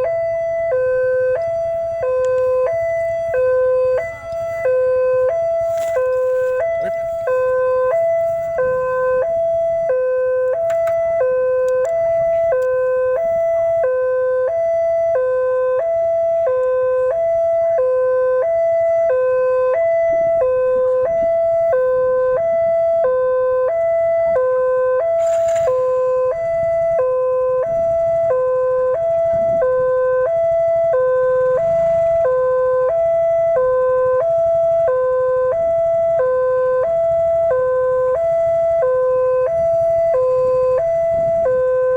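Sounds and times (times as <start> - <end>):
level crossing alarm two-tone: 0.0 - 17.9, 18.5 - 29.7.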